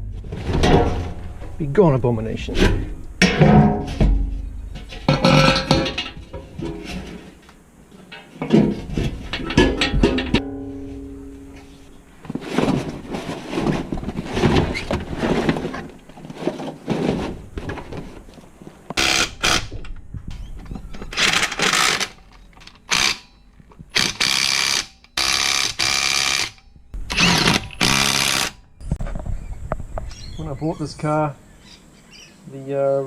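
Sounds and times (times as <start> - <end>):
clattering and knocking: 0.1 - 1.6, 2.5 - 18.5.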